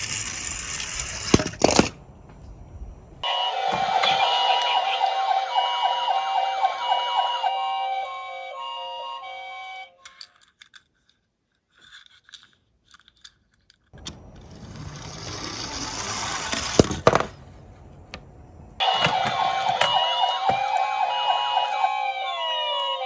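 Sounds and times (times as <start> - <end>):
toy car rolling down slope: 0.0 - 2.0, 14.0 - 17.3
electronic siren: 3.2 - 10.0, 18.8 - 23.0
toy siren tone: 3.2 - 10.2, 18.8 - 23.0
toy car clicks: 10.0 - 11.2.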